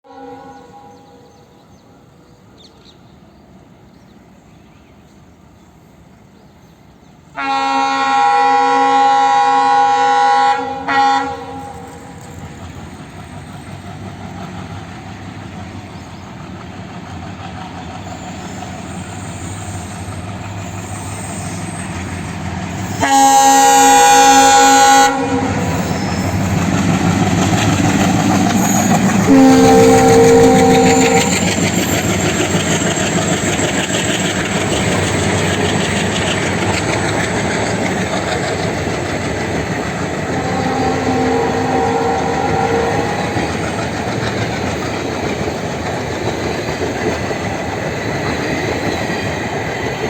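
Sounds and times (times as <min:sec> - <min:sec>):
locomotive horn blowing: 0:00.0 - 0:01.3, 0:07.4 - 0:12.1, 0:22.8 - 0:26.5, 0:28.3 - 0:31.7, 0:40.2 - 0:43.6
train rumbling: 0:00.4 - 0:50.0.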